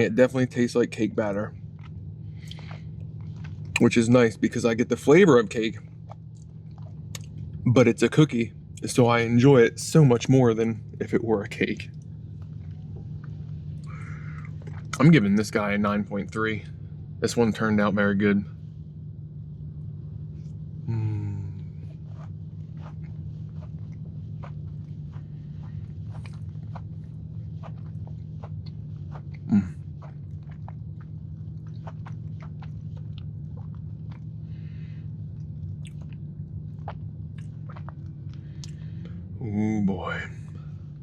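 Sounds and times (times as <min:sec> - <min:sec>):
person chewing wetly: 0:01.3 - 0:04.3, 0:05.0 - 0:07.6, 0:11.8 - 0:15.2, 0:19.6 - 0:39.4.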